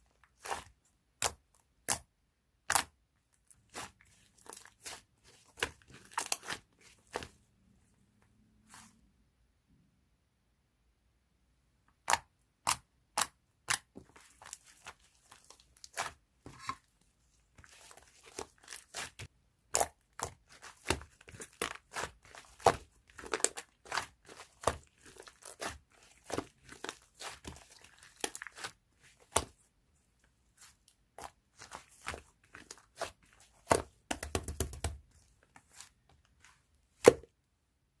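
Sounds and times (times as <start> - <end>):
crinkling and rustling: 20.2 - 37.3.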